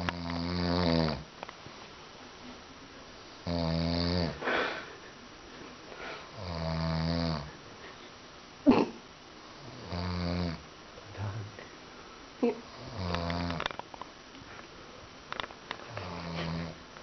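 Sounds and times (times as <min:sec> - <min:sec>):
man snoring: 0:00.0 - 0:01.3, 0:03.4 - 0:04.7, 0:06.3 - 0:07.5, 0:09.6 - 0:10.6, 0:12.8 - 0:13.6, 0:15.9 - 0:16.8
breathy exhale: 0:04.4 - 0:05.0
sudden burst of breath: 0:04.4 - 0:05.1.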